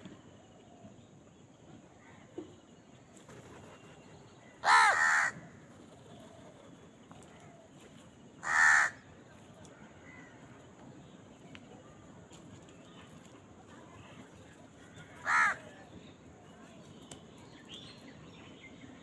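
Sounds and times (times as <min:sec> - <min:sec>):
crow cawing: 0:04.6 - 0:05.6, 0:08.4 - 0:09.1, 0:15.2 - 0:15.7.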